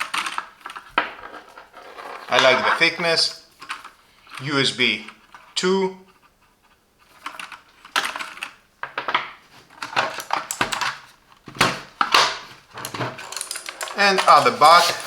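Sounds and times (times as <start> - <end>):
plastic keyboard clattering: 0.0 - 2.9, 7.1 - 15.0.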